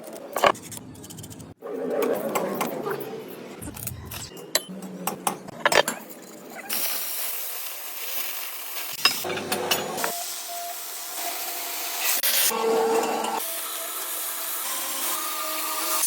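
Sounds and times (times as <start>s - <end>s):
arc welding crackling hiss: 6.7s - 9.3s, 10.0s - 12.6s, 13.4s - 16.0s.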